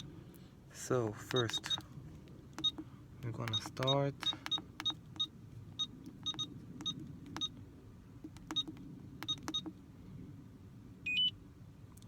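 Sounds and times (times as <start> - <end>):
electronic clicks and ticks: 1.3 - 1.8, 2.6 - 7.6, 8.2 - 9.8.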